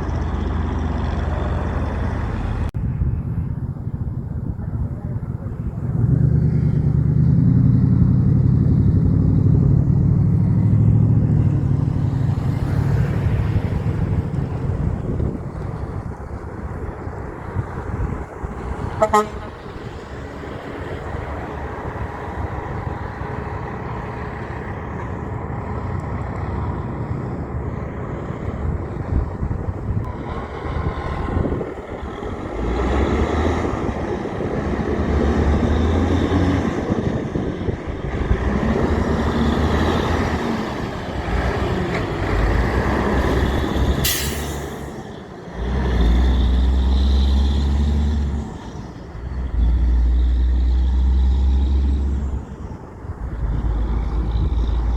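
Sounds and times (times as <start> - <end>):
heavy trucks passing: 0.0 - 54.9
air brake hiss: 44.0 - 45.1.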